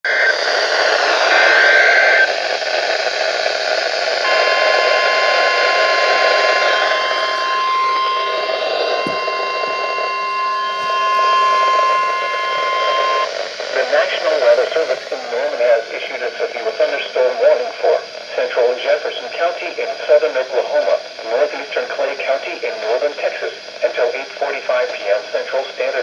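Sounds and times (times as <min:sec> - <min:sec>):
radio hiss: 0:00.1 - 0:26.0
steady warning alarm tone: 0:04.2 - 0:15.6.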